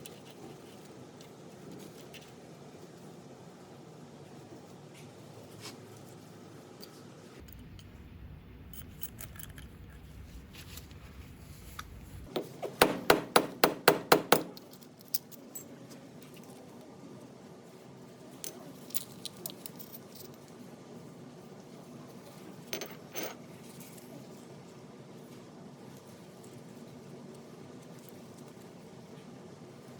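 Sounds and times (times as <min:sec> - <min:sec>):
metal parts clinking: 0:08.6 - 0:11.0.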